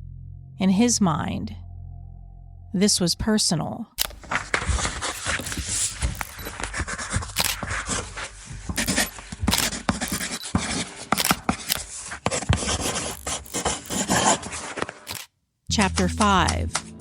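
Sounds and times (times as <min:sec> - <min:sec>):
sharp clicks and crackles: 0:04.0 - 0:06.5, 0:07.4 - 0:07.7, 0:08.8 - 0:10.5, 0:11.2 - 0:14.4, 0:15.1 - 0:15.3
scratching and scraping: 0:04.0 - 0:15.3.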